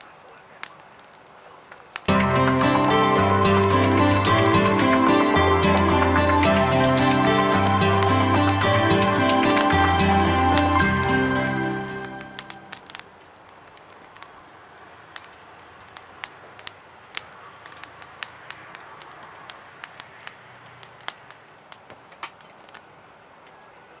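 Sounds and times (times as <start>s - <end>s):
wood fire crackling: 0.0s - 23.9s.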